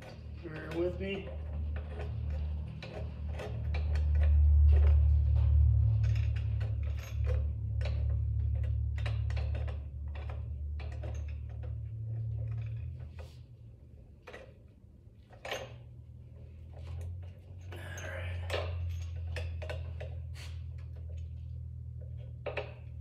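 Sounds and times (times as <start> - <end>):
metal parts clinking: 0.0 - 13.4, 15.3 - 23.0
low rumble: 1.2 - 14.0.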